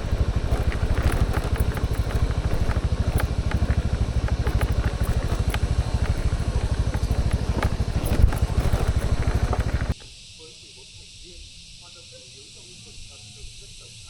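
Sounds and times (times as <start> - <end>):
light clicks and rattles: 0.0 - 10.0
small engine puttering: 0.0 - 10.0.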